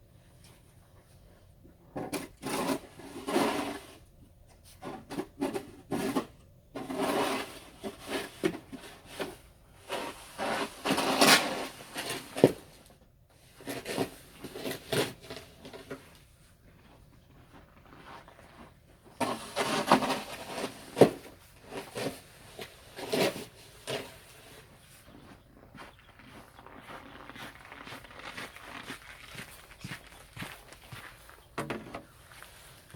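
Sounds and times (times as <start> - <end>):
snow shovel scraping snow: 2.4 - 4.0, 5.9 - 12.6, 19.2 - 24.7.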